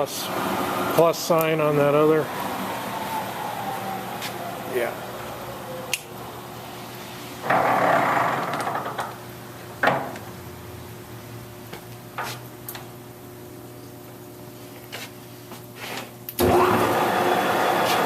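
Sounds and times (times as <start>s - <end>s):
rush of mechanical noise: 7.1s - 8.9s, 16.4s - 18.0s
lathe humming: 16.4s - 18.0s.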